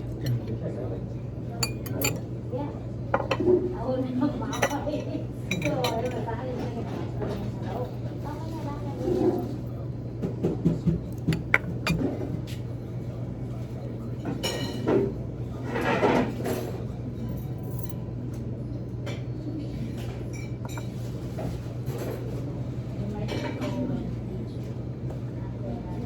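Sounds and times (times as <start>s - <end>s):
muffled voices: 0.0s - 26.0s
tableware clinking: 1.6s - 2.2s, 5.5s - 6.3s, 11.2s - 12.4s, 14.4s - 14.9s, 20.2s - 21.1s.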